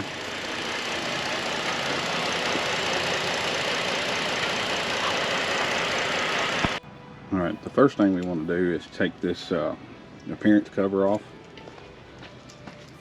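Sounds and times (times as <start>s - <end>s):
car engine idling roughly: 0.0s - 6.8s.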